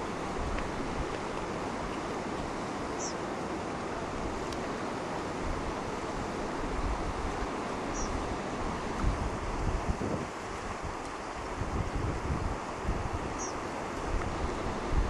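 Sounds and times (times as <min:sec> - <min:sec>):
water rushing: 0:00.0 - 0:15.0
wind buffeting microphone: 0:05.3 - 0:15.0.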